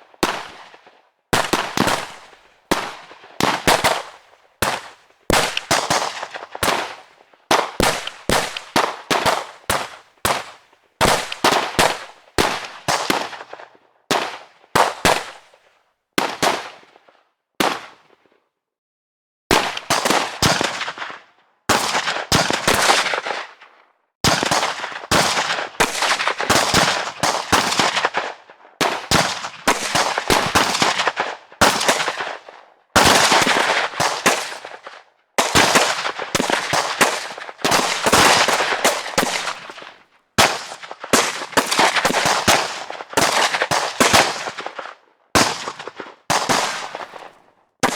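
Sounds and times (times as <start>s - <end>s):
gunshots echoing: 1.4s - 15.4s, 24.3s - 47.9s.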